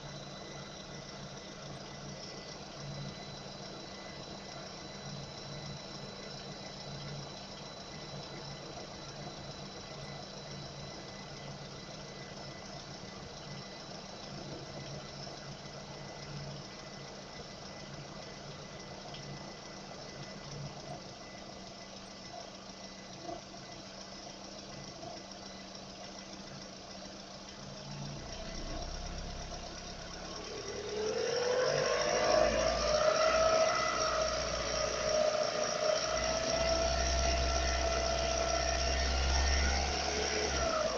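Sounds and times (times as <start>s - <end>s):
car engine idling with knock: 0.0s - 40.9s
car engine revving: 27.9s - 40.9s.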